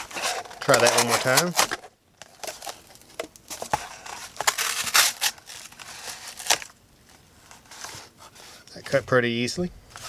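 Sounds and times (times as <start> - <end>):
rough scraping tearing rasps: 3.8 - 6.8.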